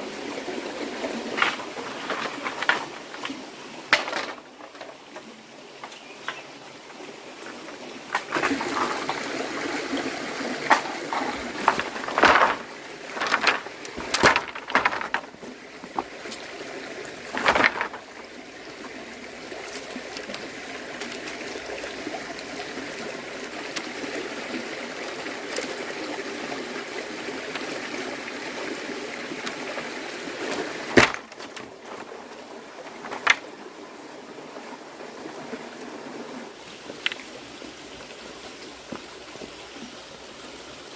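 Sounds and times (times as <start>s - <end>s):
running water: 0.0s - 40.9s
knocks and clatters of handling: 1.3s - 6.4s, 7.7s - 9.3s, 10.6s - 16.4s, 17.3s - 18.2s, 30.9s - 33.5s.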